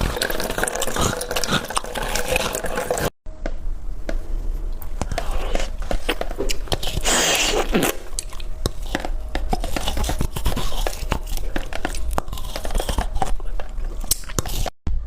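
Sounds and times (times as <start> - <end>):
biting and chewing ice: 0.0 - 3.1, 5.0 - 14.8
ice grinding crunch: 5.2 - 14.7.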